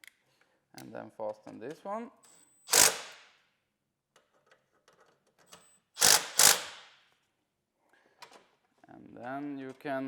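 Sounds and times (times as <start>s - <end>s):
cordless power driver bursts: 2.7s - 3.3s, 6.0s - 7.0s.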